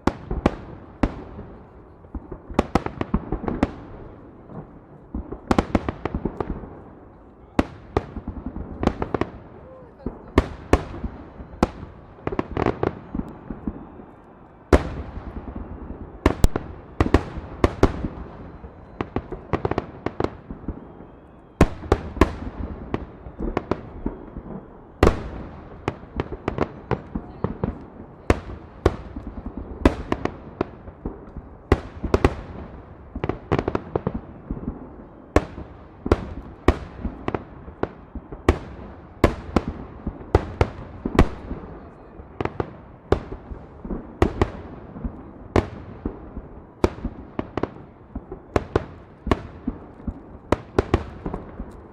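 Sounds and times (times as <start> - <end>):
firework bangs with echo: 0.0 - 51.9.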